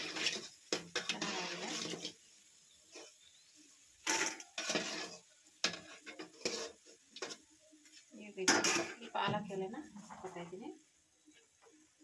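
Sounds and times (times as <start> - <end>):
metal spoon scraping frying pan: 0.0 - 3.4, 4.0 - 9.2.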